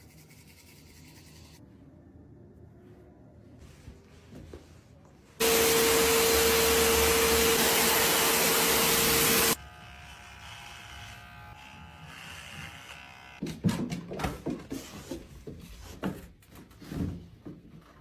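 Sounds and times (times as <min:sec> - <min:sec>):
small appliance motor hissing: 0:05.4 - 0:10.0.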